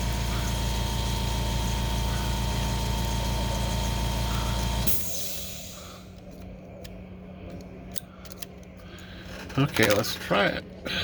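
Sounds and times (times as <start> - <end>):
typewriter motor humming: 0.0 - 5.2.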